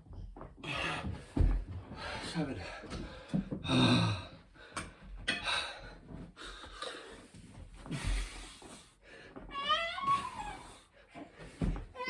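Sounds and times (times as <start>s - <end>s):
man breathing hard: 0.6s - 9.4s.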